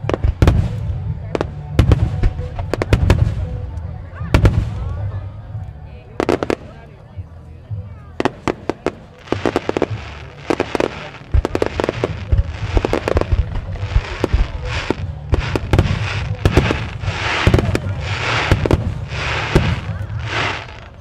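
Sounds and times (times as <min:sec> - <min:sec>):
fireworks bangs: 0:08.2 - 0:21.0
hissing firework bursts: 0:08.2 - 0:21.0.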